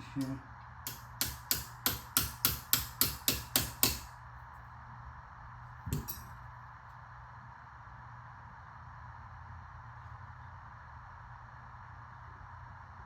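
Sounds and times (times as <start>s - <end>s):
hammer knocking on metal: 0.9s - 4.1s.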